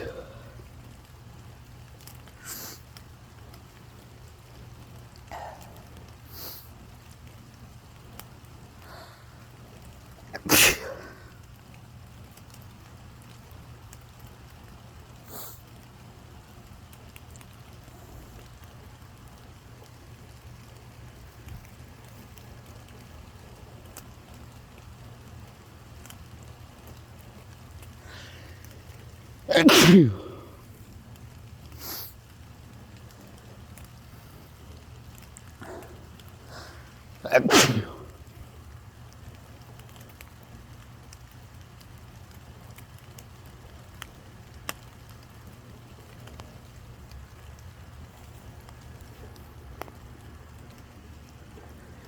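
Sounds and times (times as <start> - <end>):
loud sneeze: 0.0 - 0.5, 2.4 - 2.8, 5.3 - 5.8, 10.3 - 11.3, 29.5 - 30.6, 35.6 - 38.1
light rain falling: 0.0 - 52.0.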